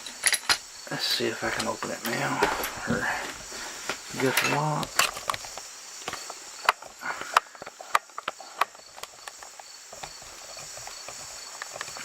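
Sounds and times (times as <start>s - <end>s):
padlock and picks clicking: 0.0s - 0.7s, 4.2s - 12.0s.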